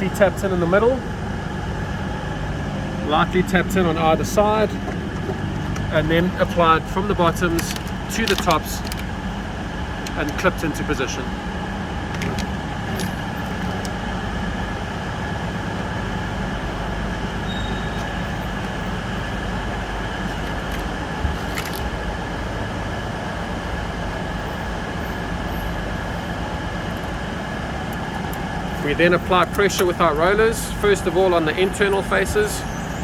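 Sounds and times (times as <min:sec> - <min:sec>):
machinery and trains rumbling: 0:00.0 - 0:33.0
escalator step panels clicking: 0:10.0 - 0:10.8, 0:12.0 - 0:14.1.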